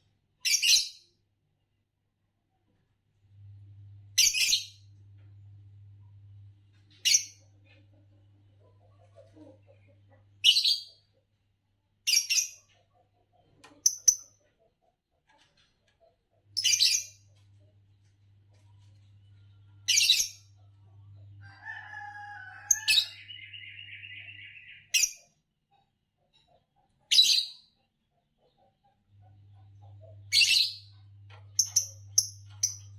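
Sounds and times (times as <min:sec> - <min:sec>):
lovebirds chirping: 0:21.4 - 0:25.2, 0:29.6 - 0:32.9.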